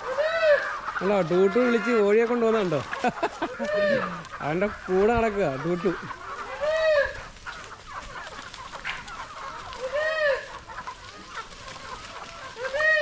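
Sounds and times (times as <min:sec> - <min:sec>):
chickens calling: 0:00.0 - 0:13.0
chickens clucking: 0:00.0 - 0:13.0.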